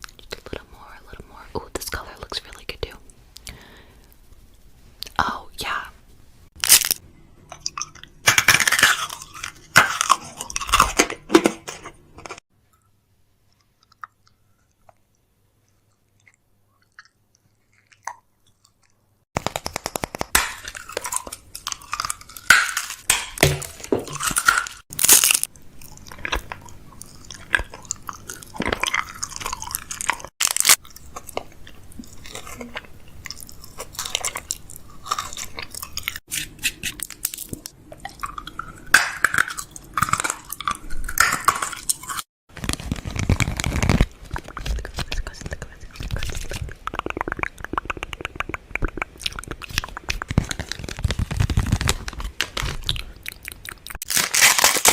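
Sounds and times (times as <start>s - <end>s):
groceries knocking and clattering: 9.7s - 12.4s, 22.5s - 25.4s.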